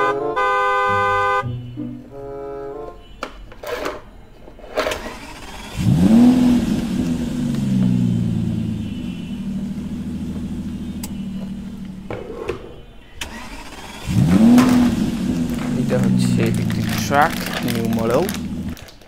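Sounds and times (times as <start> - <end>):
engine starting and idling: 4.8 - 12.1, 13.2 - 18.8
clicks: 11.0 - 12.0.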